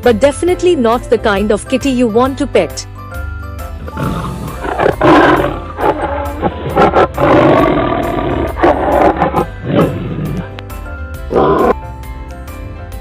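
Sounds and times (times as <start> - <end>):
background music: 0.0 - 13.0
tiger roaring: 3.9 - 10.5, 11.3 - 11.8.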